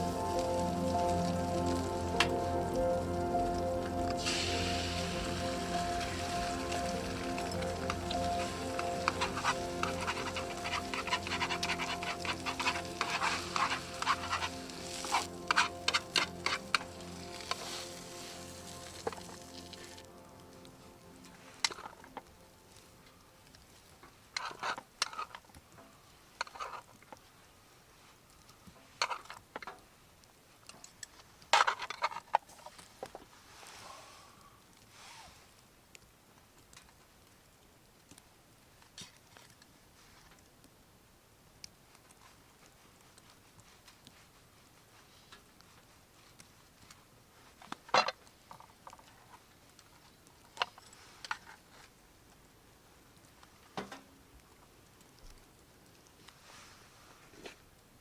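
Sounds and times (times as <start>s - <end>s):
faint steady hiss: 0.0s - 58.0s.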